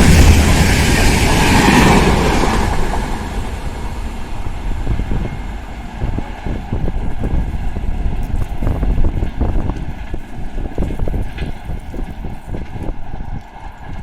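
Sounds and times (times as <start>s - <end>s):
passing train: 0.0s - 14.0s
wind buffeting microphone: 0.0s - 14.0s.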